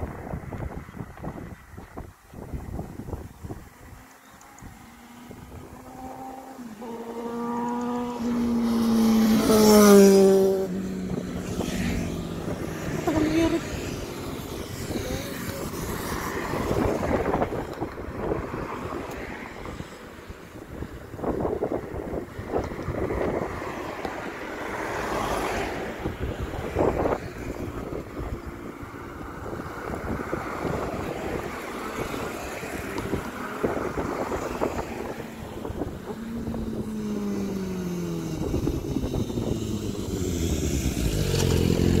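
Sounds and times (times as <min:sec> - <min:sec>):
wind on microphone: 0:00.0 - 0:42.0
motorcycle engine running: 0:35.0 - 0:42.0.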